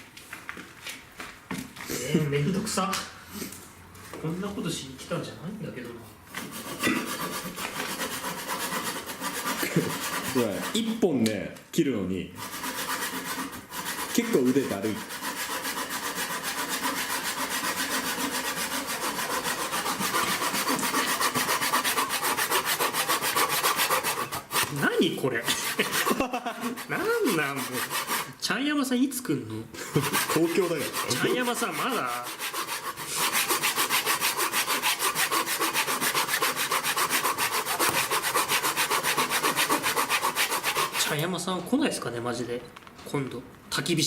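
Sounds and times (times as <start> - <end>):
hand saw cutting log: 6.4 - 11.0, 12.4 - 28.4, 29.8 - 41.2.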